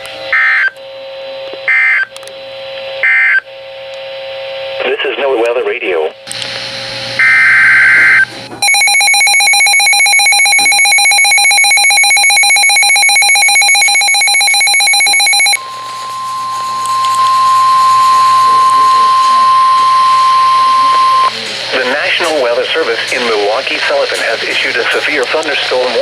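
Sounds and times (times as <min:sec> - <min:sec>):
shrill pulsing alarm beep: 0:01.7 - 0:02.1, 0:03.0 - 0:03.4, 0:07.2 - 0:21.3
long steady alarm tone: 0:07.2 - 0:21.3
warbling digital header tones: 0:08.6 - 0:21.3.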